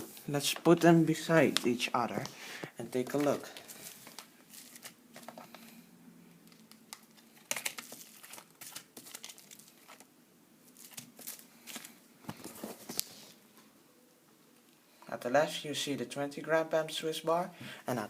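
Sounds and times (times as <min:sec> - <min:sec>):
packaging crinkling: 0:03.0 - 0:05.7, 0:06.4 - 0:10.1, 0:10.7 - 0:13.1.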